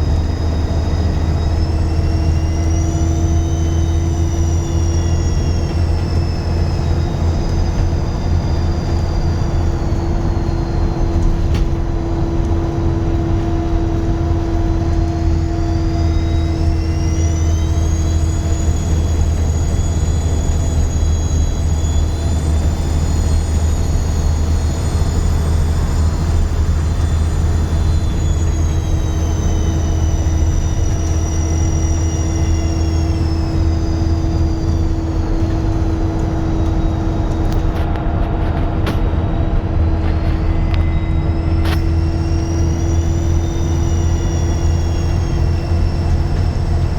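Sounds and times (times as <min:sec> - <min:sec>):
bus engine drone: 0:00.0 - 0:46.9
high turbo whistle: 0:00.0 - 0:46.9.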